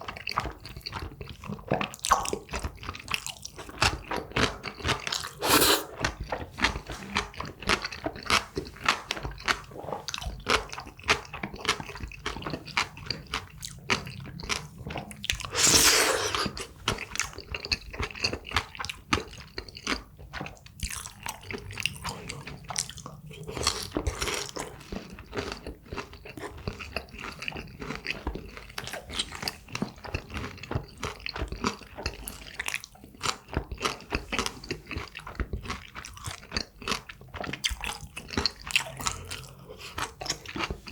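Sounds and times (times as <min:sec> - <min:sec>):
person chewing and crunching food: 0:05.4 - 0:06.0, 0:15.1 - 0:40.9.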